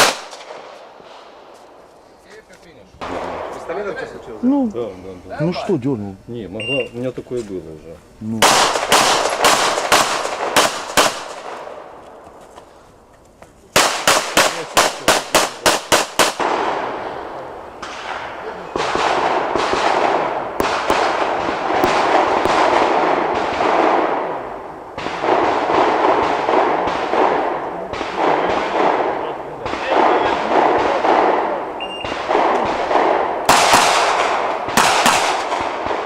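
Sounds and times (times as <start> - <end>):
handgun shots: 0.0 - 0.8, 8.4 - 11.6, 13.8 - 16.6, 32.0 - 36.0.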